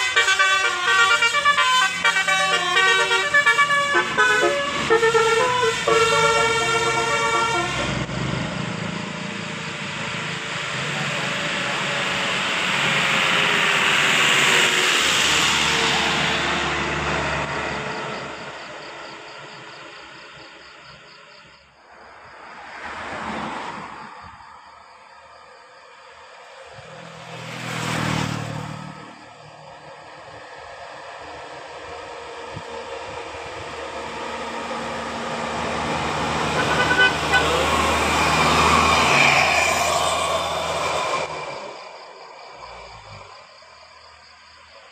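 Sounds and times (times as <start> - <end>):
bus horn toots: 0.0 - 8.1, 35.8 - 39.3
bus driving past: 0.0 - 44.9.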